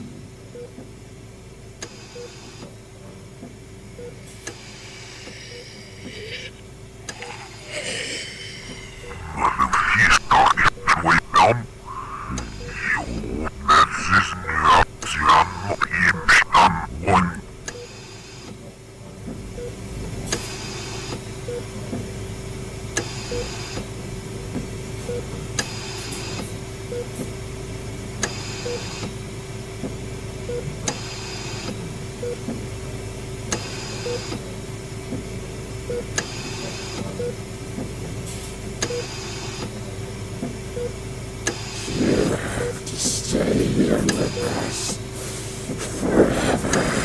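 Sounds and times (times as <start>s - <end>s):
steady hum: 4.2s - 18.3s, 41.6s - 47.0s
hiss: 41.6s - 47.0s.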